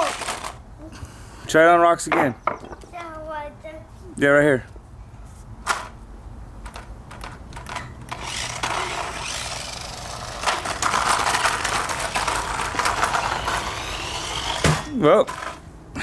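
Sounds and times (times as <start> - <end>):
toy truck clattering over rocks: 0.0 - 0.6, 6.7 - 15.6.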